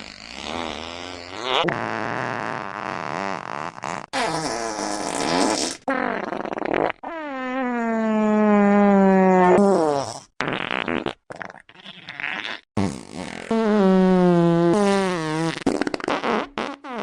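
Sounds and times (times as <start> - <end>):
fart sound effects: 0.0 - 17.0.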